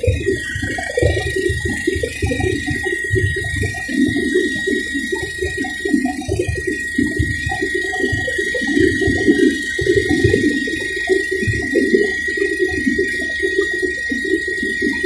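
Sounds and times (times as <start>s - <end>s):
helicopter high whine: 0.0s - 15.0s.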